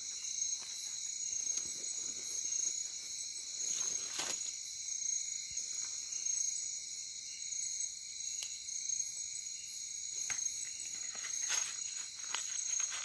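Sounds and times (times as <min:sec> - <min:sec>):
crickets and insects trilling: 0:00.0 - 0:13.0.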